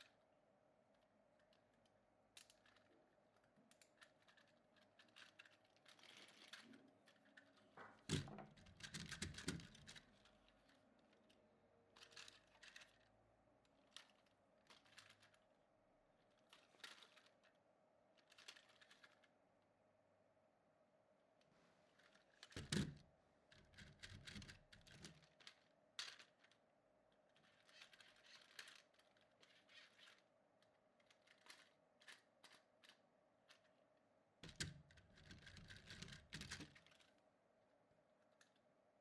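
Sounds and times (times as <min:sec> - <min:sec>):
small objects clicking and rustling: 0:01.4 - 0:13.1, 0:13.7 - 0:15.4, 0:16.3 - 0:17.6, 0:18.2 - 0:19.3, 0:22.0 - 0:33.7, 0:34.4 - 0:37.2.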